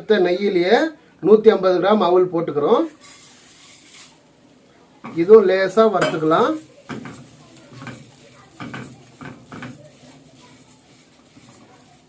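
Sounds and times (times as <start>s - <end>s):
spoon scraping rice in a pan: 2.9s - 4.3s, 5.1s - 12.0s.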